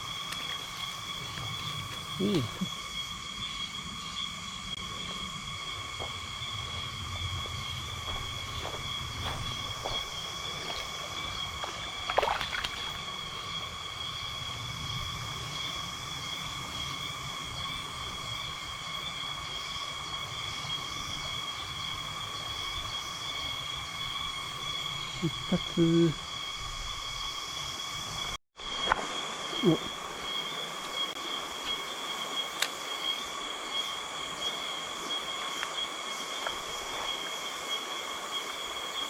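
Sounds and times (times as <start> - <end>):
insect chorus droning: 0.0 - 39.0
stream water flowing: 9.3 - 13.3.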